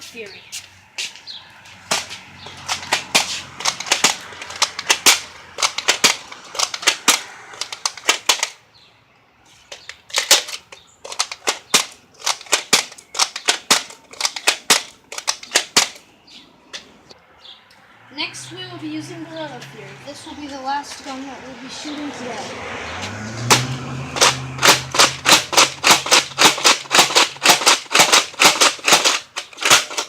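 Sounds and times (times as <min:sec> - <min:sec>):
toy blaster clacking and firing: 0:02.6 - 0:08.6, 0:09.9 - 0:16.0, 0:24.2 - 0:30.0.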